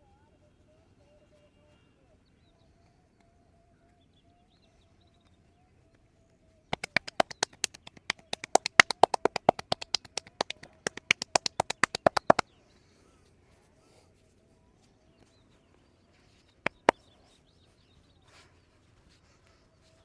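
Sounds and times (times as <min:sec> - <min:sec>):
hands slapping on body: 0:06.8 - 0:12.4, 0:16.7 - 0:17.0.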